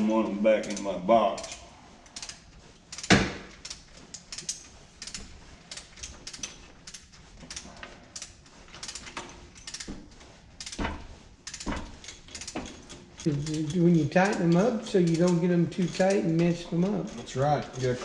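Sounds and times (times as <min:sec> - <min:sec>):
metal tools clinking: 0:10.6 - 0:18.0.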